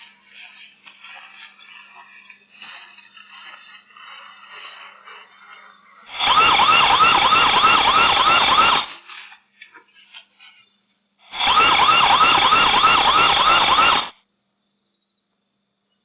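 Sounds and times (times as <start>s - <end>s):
electronic warbling alarm siren: 4.6s - 9.0s, 11.4s - 14.2s.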